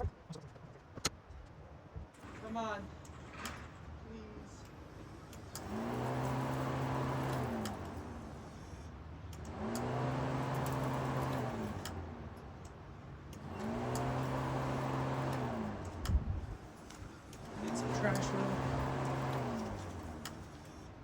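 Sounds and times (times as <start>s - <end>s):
car starter cranking engine: 5.1s - 21.0s.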